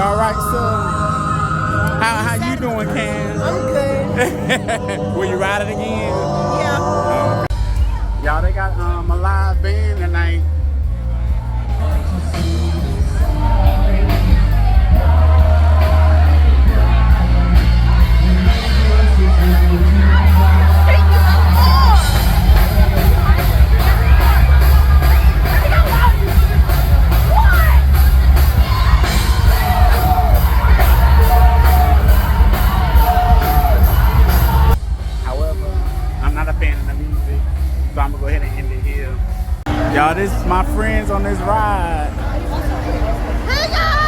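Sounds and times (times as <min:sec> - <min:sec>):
live band playing loud music: 0:00.0 - 0:42.7
person singing: 0:01.9 - 0:07.5
heavy steady bass: 0:02.0 - 0:44.0.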